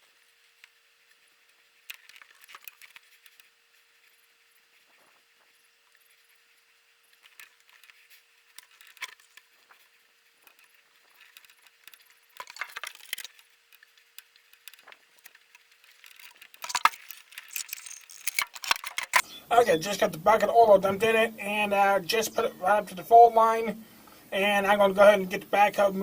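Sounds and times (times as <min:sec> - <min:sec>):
scraping rustle: 0:00.0 - 0:19.2
hands handling objects: 0:07.2 - 0:19.2
sharp clicks: 0:10.5 - 0:19.2.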